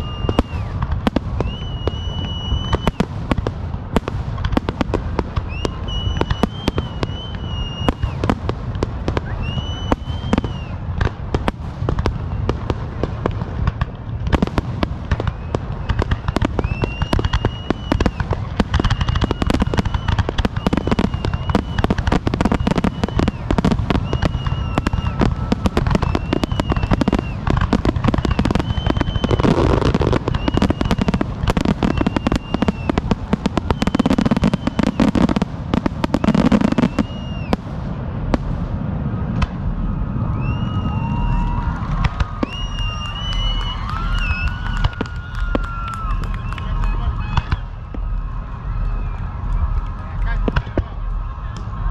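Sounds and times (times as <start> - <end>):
fireworks bangs and crackles: 0.0 - 51.9
whistling fireworks: 0.0 - 51.9.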